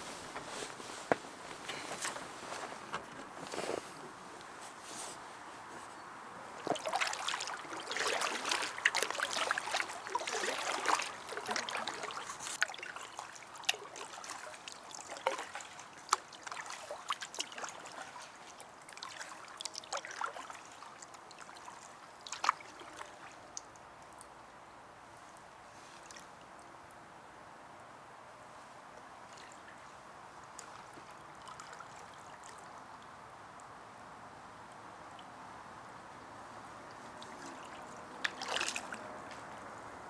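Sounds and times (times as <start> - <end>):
water trickling and splashing: 4.4 - 27.0, 28.9 - 40.0
sharp water drips: 6.6 - 24.4, 36.8 - 39.8.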